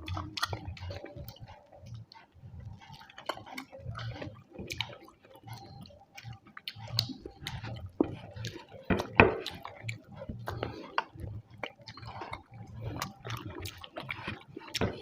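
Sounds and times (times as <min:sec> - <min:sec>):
wet chewing mouth sounds: 0:00.0 - 0:15.0.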